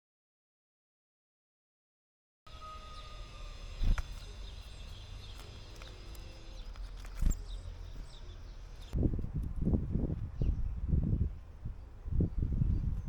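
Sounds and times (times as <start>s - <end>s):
birds chirping: 2.5s - 9.0s.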